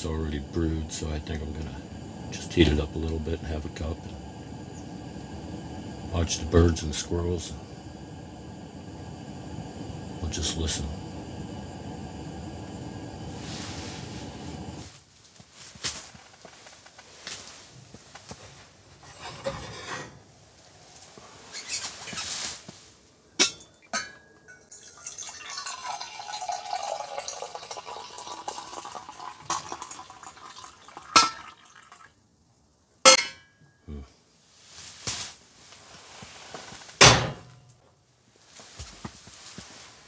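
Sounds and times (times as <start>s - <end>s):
coffee pouring into a cup: 0.1s - 14.9s, 24.7s - 32.2s
pot and cup clinking: 23.4s - 32.0s.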